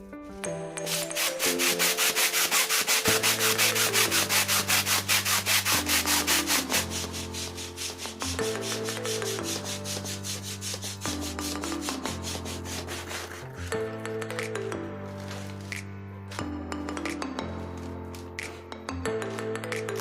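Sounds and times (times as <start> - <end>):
background music: 0.0 - 20.0
rapid rasping strokes: 0.9 - 13.8.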